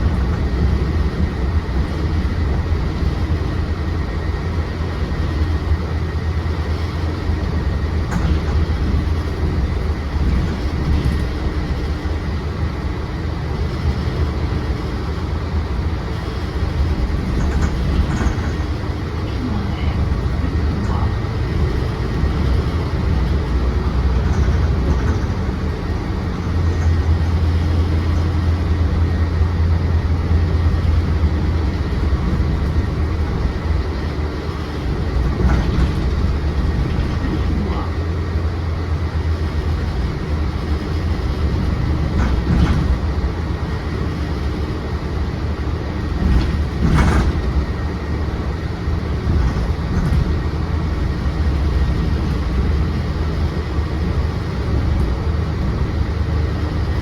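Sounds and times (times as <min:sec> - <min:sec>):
bus engine rumble: 0:00.0 - 0:57.0
road noise: 0:00.0 - 0:57.0.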